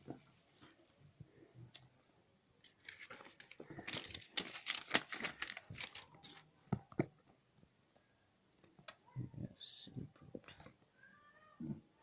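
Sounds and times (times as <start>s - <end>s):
packaging crinkling: 2.6s - 6.5s.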